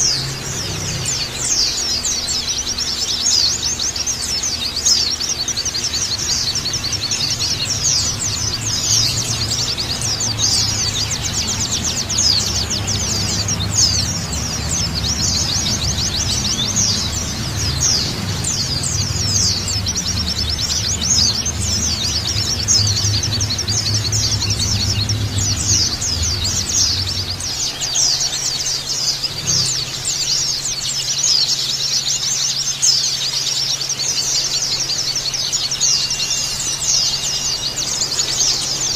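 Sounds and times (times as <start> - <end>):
flock of birds chirping: 0.0 - 38.9
low background hum: 0.0 - 38.9.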